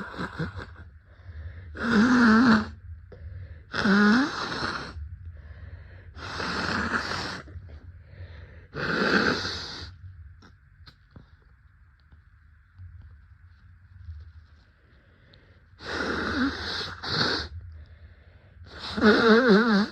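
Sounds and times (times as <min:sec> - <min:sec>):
wheezy gasping breaths: 0:00.0 - 0:10.0, 0:14.8 - 0:19.9.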